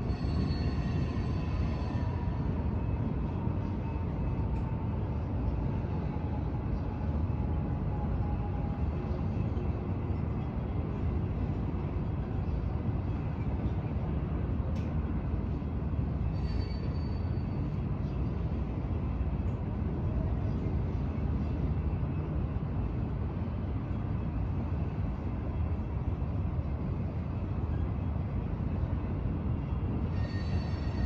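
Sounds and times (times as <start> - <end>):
train rumbling: 0.0 - 31.0.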